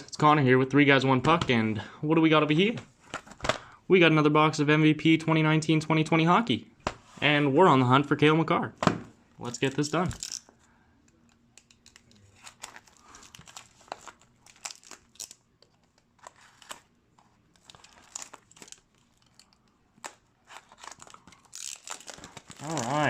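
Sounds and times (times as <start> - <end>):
packaging crinkling and tearing: 11.5 - 23.0.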